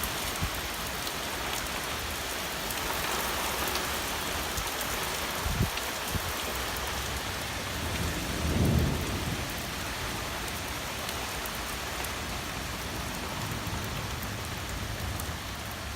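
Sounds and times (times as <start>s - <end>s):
heavy rain: 0.0s - 15.9s
thunder rumble: 7.2s - 11.4s.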